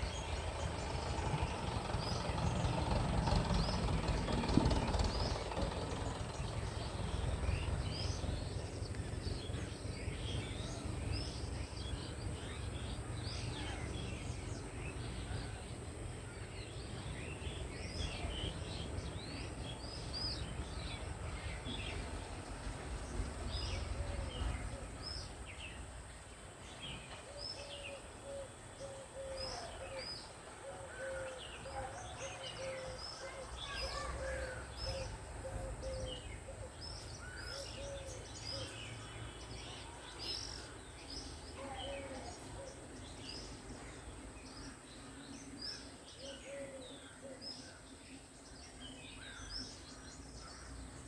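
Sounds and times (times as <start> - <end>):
low rumble: 0.0 - 13.4
birds chirping: 0.0 - 51.0.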